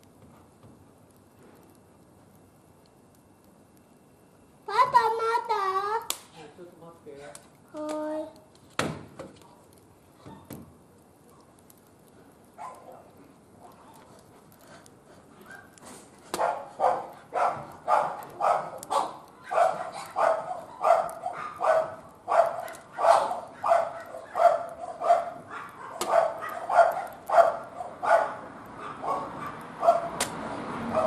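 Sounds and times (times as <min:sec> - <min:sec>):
dog barking: 0:12.6 - 0:14.0, 0:15.4 - 0:30.2.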